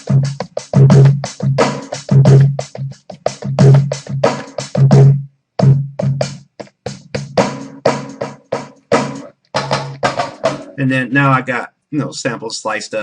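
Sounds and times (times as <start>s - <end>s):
sampled drum break hits: 0.0s - 11.2s.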